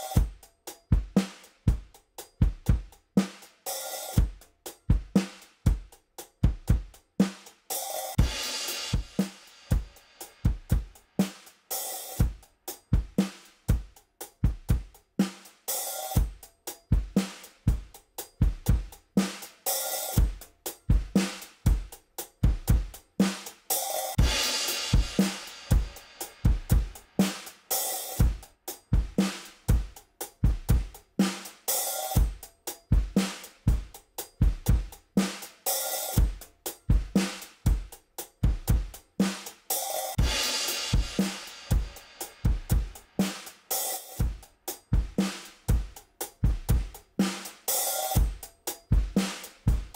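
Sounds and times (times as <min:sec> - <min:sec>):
drum kit playing a groove: 0:00.0 - 0:49.9
crash cymbal: 0:07.7 - 0:12.3, 0:23.4 - 0:29.6, 0:39.7 - 0:45.6.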